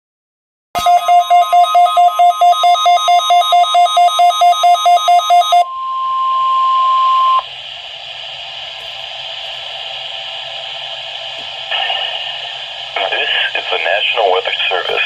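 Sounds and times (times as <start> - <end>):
steady warning alarm tone: 0.8 - 15.0
radio static hiss: 8.8 - 15.0.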